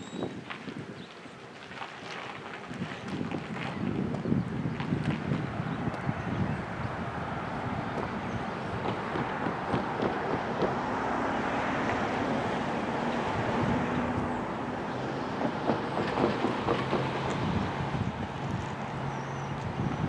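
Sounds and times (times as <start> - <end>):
diesel locomotive engine hum: 4.1 - 20.0
train wheels on rails: 8.0 - 12.6, 14.2 - 18.8.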